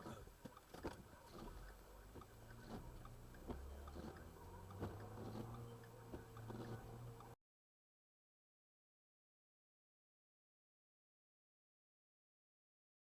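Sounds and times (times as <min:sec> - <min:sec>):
faint low hum: 0:00.0 - 0:07.4
handling clicks and taps: 0:00.0 - 0:07.4.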